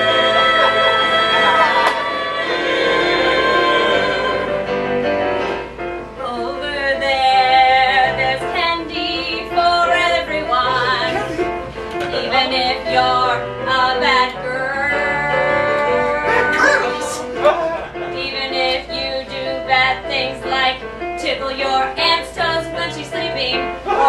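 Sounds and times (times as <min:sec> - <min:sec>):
person singing live: 0:00.0 - 0:04.6, 0:12.2 - 0:17.3
instrumental accompaniment: 0:00.0 - 0:24.0.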